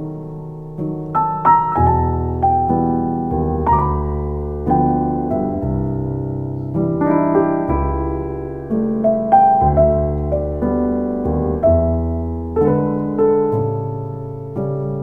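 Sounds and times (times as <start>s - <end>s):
slow piano piece: 0.0s - 15.0s.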